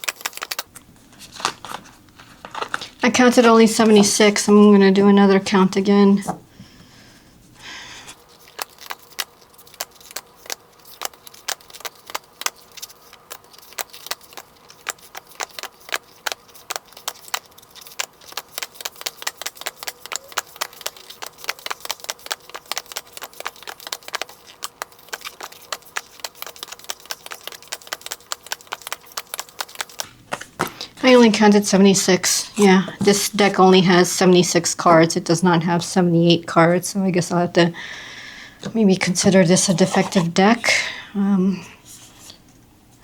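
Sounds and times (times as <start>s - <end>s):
cards dealt onto a pile clicking: 0.0s - 4.2s, 8.3s - 31.5s, 39.6s - 40.3s.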